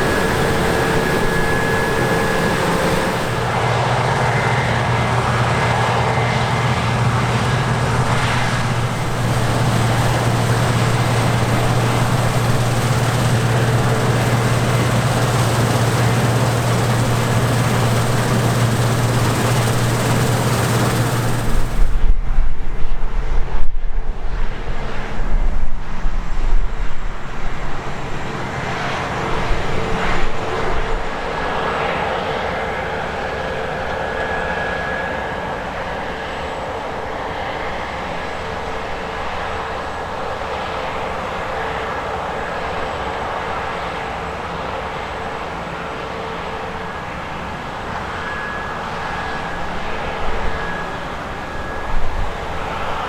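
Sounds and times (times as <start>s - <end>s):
irregular low rumbling: 0.0s - 3.6s
farm machinery engine hum: 0.0s - 3.7s, 7.2s - 22.1s.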